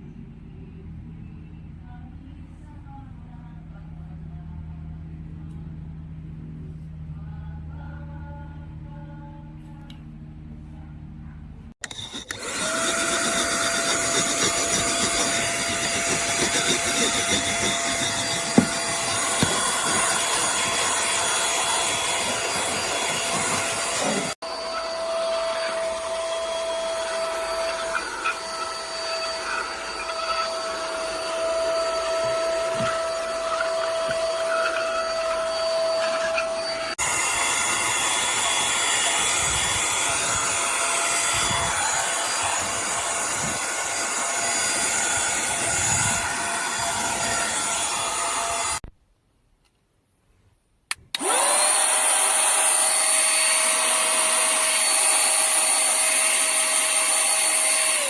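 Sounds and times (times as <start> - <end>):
mini vacuum cleaner running: 11.8 - 48.8, 51.2 - 58.0.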